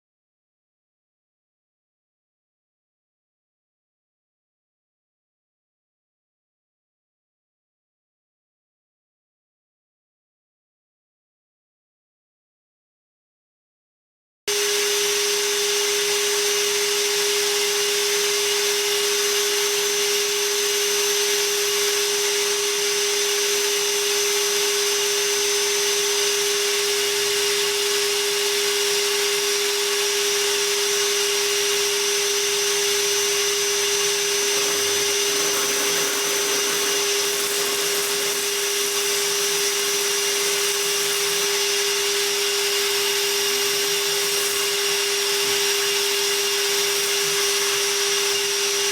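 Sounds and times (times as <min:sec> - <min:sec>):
vacuum motor whine and hum: 0:14.5 - 0:48.9.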